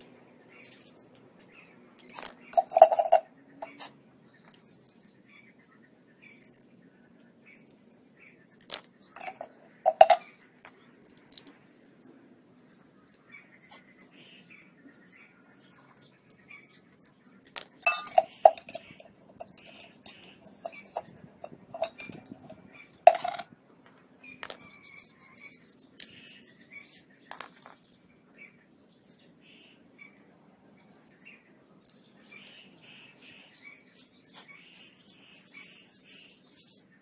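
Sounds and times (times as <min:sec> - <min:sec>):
metal kettle clinking and clanking: 0:02.6 - 0:03.3, 0:09.2 - 0:10.2, 0:17.8 - 0:19.9, 0:20.6 - 0:23.4.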